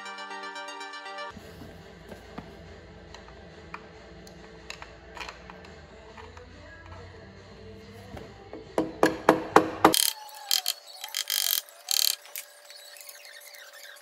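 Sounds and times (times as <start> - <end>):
ratchet wrench clicking: 9.8 - 12.5.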